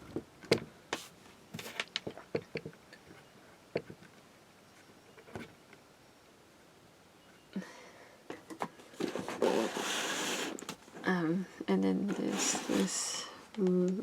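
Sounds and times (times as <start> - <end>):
packaging rustling and scraping: 8.7 - 11.1, 12.0 - 13.2.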